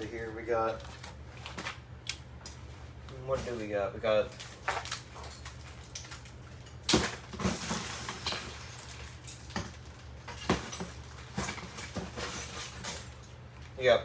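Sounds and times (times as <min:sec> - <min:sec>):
plastic and metal parts clattering: 0:03.3 - 0:13.3.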